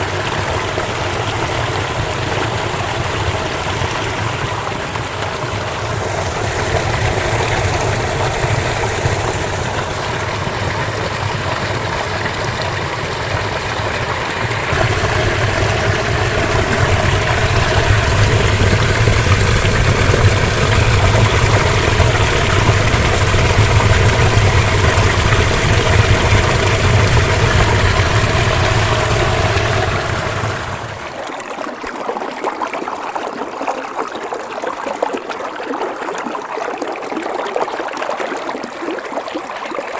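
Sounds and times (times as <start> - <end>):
stream rushing over stones: 0.0 - 31.8.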